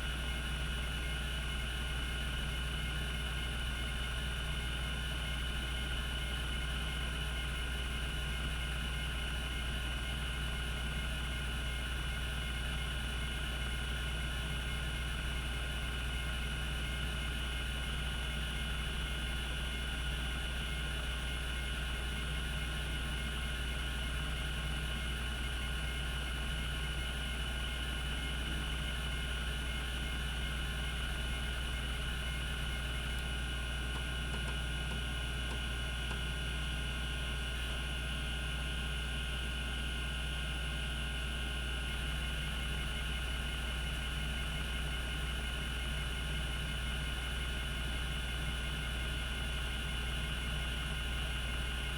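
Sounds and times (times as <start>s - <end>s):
hard disk drive spinning: 20.0s - 38.4s.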